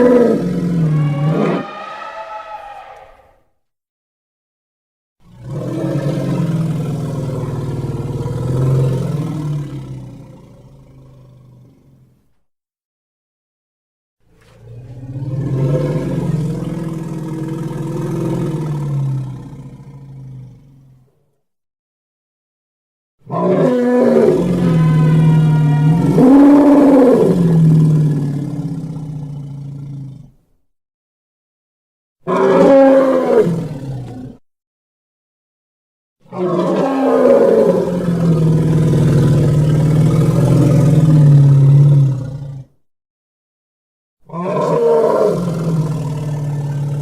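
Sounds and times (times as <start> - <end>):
deep dinosaur roars: 0.0 - 3.4, 5.2 - 12.0, 14.4 - 21.1, 23.3 - 30.4, 32.2 - 34.4, 36.2 - 42.8, 44.3 - 47.0.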